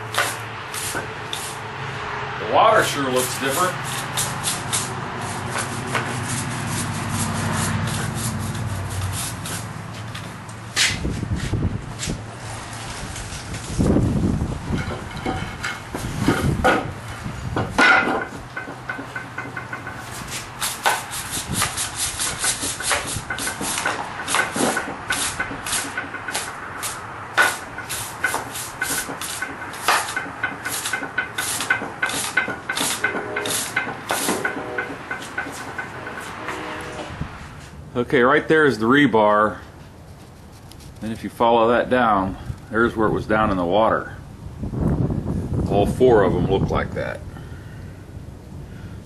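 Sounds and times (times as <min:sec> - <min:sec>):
brush scrubbing metal: 0:00.0 - 0:01.7, 0:02.7 - 0:10.4, 0:18.2 - 0:37.1.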